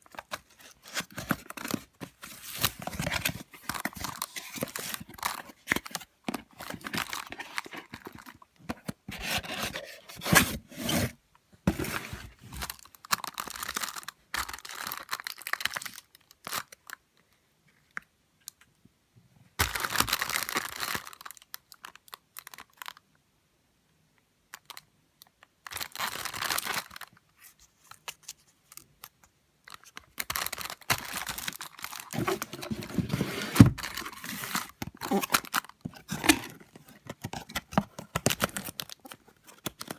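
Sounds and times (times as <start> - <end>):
packaging rustling and tearing: 0.0 - 16.0, 29.8 - 39.9.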